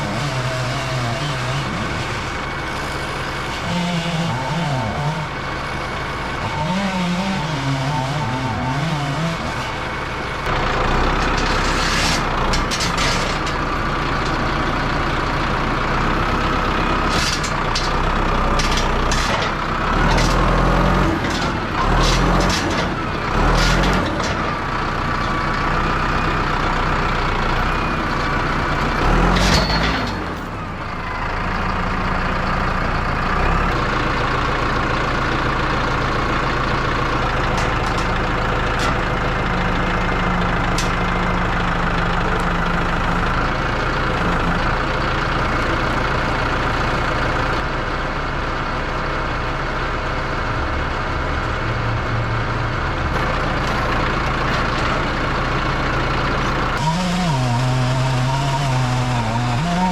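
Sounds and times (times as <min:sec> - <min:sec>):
heavy machine engine under load: 0:00.0 - 0:59.9
clanks and knocks: 0:10.4 - 0:14.4, 0:17.1 - 0:24.6, 0:29.1 - 0:30.7, 0:37.1 - 0:39.6, 0:40.4 - 0:41.2, 0:53.1 - 0:56.8.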